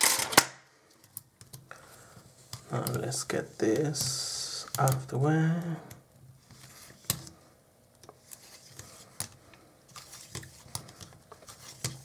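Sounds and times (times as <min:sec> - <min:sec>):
small metal parts clicking and scraping: 0:00.0 - 0:00.5.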